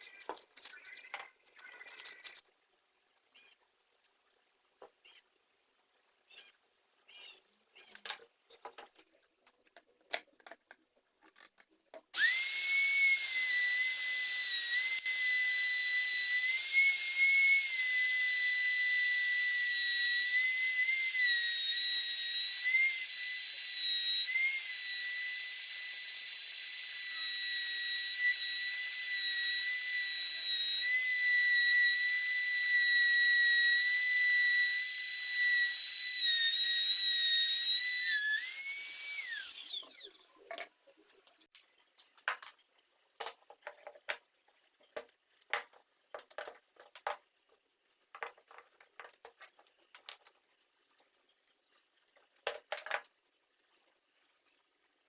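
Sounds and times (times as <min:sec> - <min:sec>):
power tool motor whining: 0:12.2 - 0:40.3.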